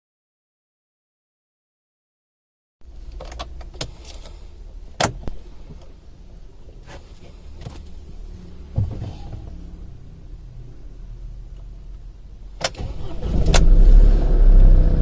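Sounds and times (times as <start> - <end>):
low steady rumble: 2.8 - 15.0
heavy thump: 8.7 - 9.5.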